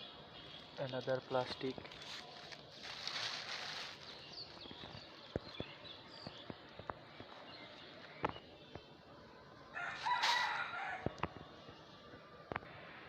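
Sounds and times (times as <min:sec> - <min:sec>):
rooster crowing: 0:09.7 - 0:11.2.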